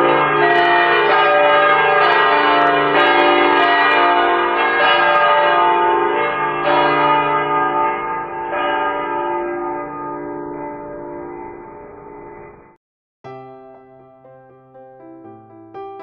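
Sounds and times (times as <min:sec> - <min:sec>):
church bells ringing: 0:00.0 - 0:12.8.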